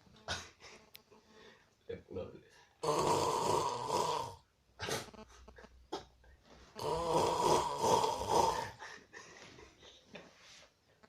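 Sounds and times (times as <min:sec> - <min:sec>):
soft breathing: 0:00.6 - 0:01.8, 0:08.8 - 0:11.0
person snoring: 0:02.8 - 0:05.1, 0:06.8 - 0:08.9.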